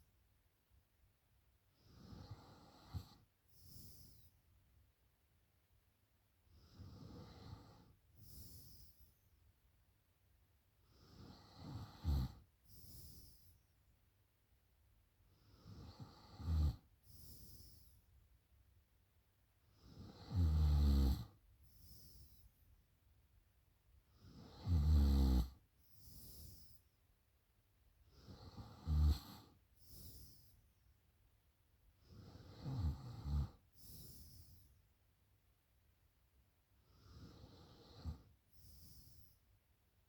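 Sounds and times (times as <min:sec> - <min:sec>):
woman snoring: 0:11.0 - 0:13.4, 0:15.6 - 0:17.8, 0:19.8 - 0:21.3, 0:24.2 - 0:26.8, 0:28.2 - 0:30.4, 0:32.1 - 0:34.6, 0:37.0 - 0:39.3.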